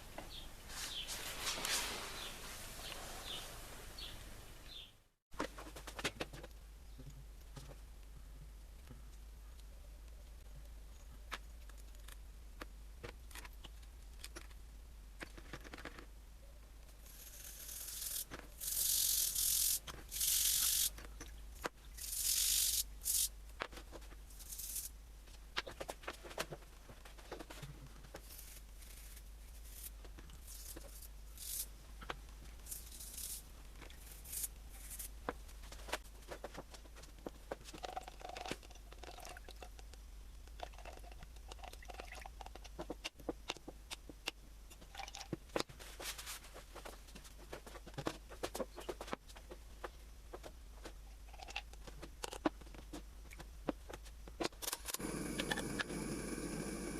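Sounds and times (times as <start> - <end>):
loud hissing bursts: 55.0 - 56.9.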